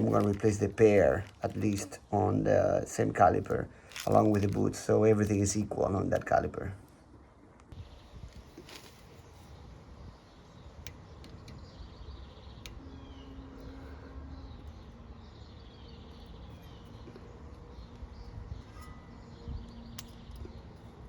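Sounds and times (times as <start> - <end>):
faint bird chirps: 9.1 - 21.0.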